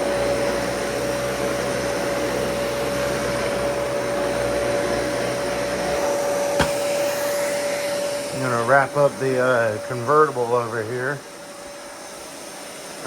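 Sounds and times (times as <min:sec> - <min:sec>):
vacuum cleaner whine: 0:00.0 - 0:13.0
sharp knock: 0:06.6 - 0:06.8.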